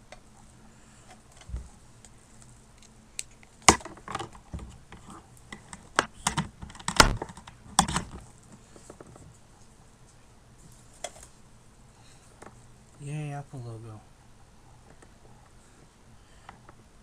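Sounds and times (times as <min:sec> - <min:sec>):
handling clicks and knocks: 0:03.7 - 0:08.2.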